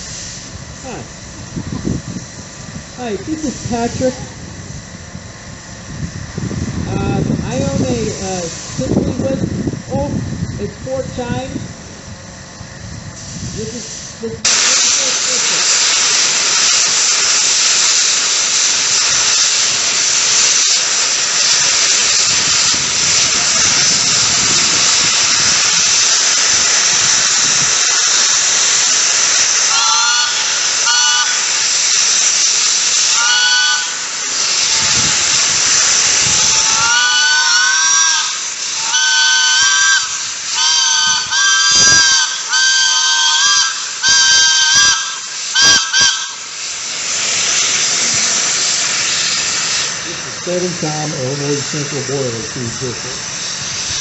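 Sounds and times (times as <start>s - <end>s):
steam hissing: 0.0s - 54.0s
steam whistle blasts: 14.5s - 46.5s.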